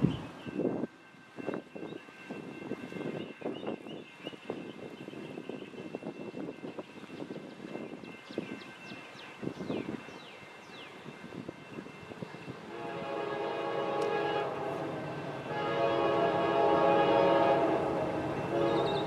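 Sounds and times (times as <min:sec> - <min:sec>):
locomotive air horn blasts: 0:12.7 - 0:19.0.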